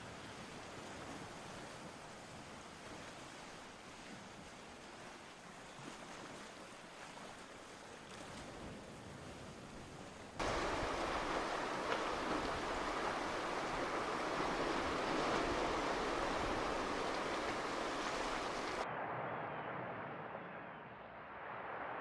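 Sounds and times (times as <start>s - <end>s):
water rushing: 10.4s - 18.8s.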